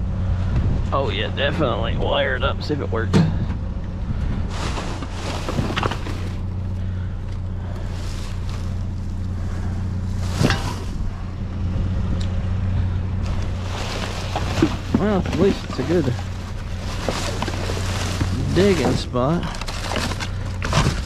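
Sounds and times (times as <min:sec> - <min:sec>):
steady low hum: 0:00.0 - 0:21.0
rustling of bags and junk: 0:03.2 - 0:11.4, 0:12.7 - 0:21.0.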